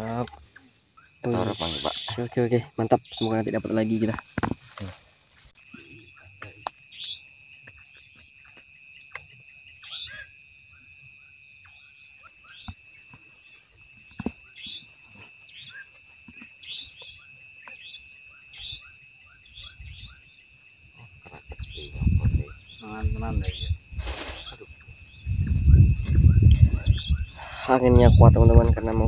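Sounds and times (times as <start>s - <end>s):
insects droning: 0.0s - 29.0s
short chirping calls: 5.7s - 8.2s, 9.0s - 10.3s, 14.4s - 20.4s.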